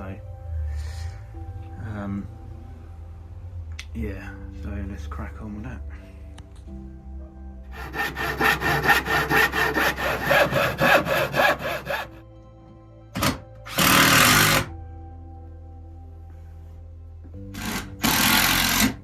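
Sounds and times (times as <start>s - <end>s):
background music: 0.0s - 19.0s
hand saw cutting wood: 7.7s - 12.2s, 13.2s - 14.7s, 17.6s - 19.0s.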